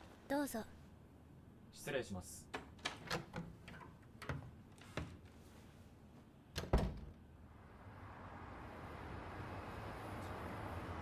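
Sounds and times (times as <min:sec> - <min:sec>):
door shutting with heavy thud: 0:06.6 - 0:07.2.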